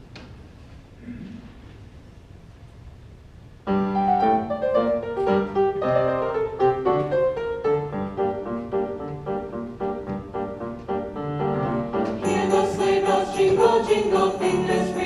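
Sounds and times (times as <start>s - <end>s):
piano chords and melody: 3.7s - 15.0s.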